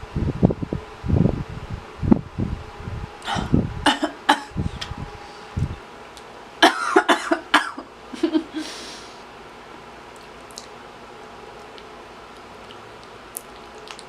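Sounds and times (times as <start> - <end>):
person coughing: 3.2 - 4.6, 6.6 - 8.8.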